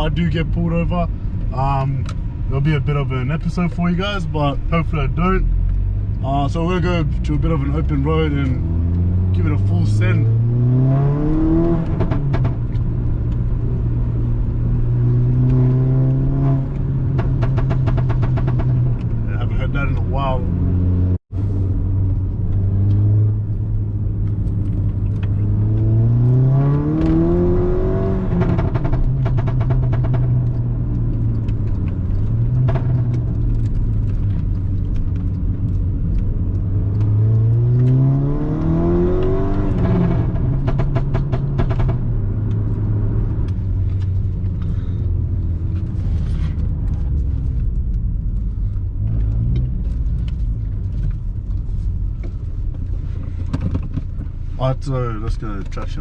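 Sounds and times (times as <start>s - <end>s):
exhaust crackles: 0.0s - 56.0s
turbocharged car engine revving: 6.5s - 21.2s, 22.4s - 48.2s.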